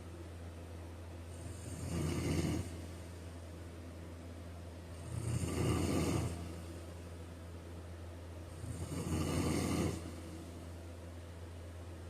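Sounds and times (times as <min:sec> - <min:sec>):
steady low hum: 0:00.0 - 0:12.0
man snoring: 0:01.3 - 0:02.9, 0:04.9 - 0:06.6, 0:08.5 - 0:10.3.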